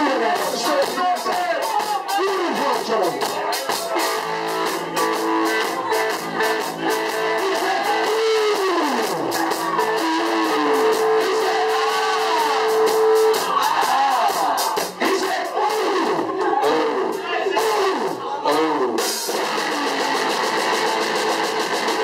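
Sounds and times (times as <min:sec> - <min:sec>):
steady drums: 0:00.0 - 0:22.0
electric guitar lead: 0:04.0 - 0:13.4.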